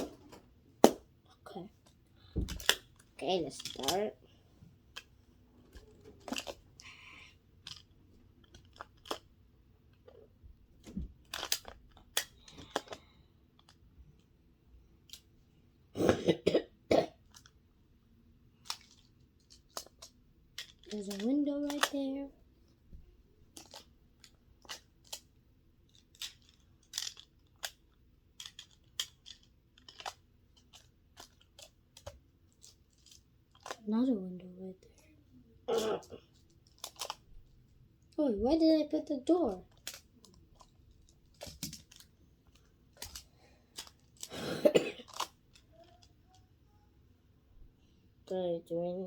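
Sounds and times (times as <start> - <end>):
magnetic pieces clicking together: 2.5 - 4.1, 7.6 - 9.3, 11.2 - 13.0, 18.6 - 22.2, 23.5 - 33.8, 36.4 - 37.2, 39.7 - 44.3, 45.0 - 46.2
plastic tiles snapping together: 11.3 - 13.0, 19.7 - 22.0.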